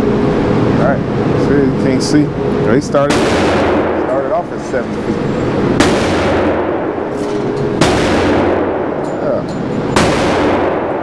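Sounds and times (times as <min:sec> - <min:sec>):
gunshots in reverberant room: 0:03.1 - 0:04.8, 0:05.4 - 0:11.0.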